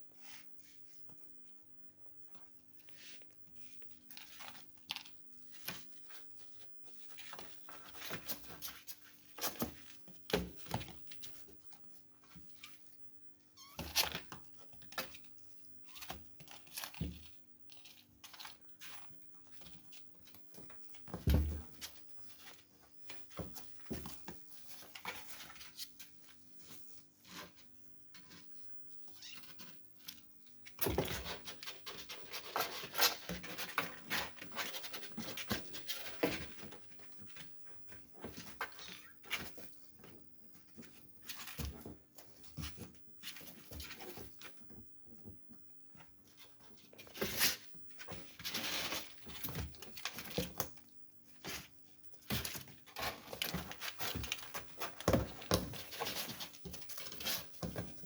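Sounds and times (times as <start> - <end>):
kitten scratchy rustles: 2.8 - 13.0, 13.6 - 58.0.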